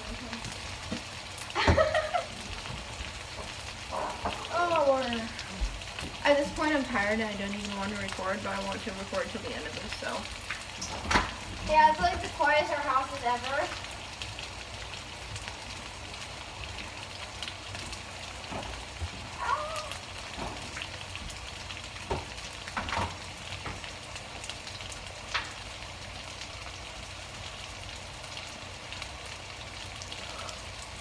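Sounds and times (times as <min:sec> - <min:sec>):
chicken sizzling in oil: 0:00.0 - 0:31.0
small pops and crackles: 0:10.2 - 0:12.4, 0:24.5 - 0:25.8.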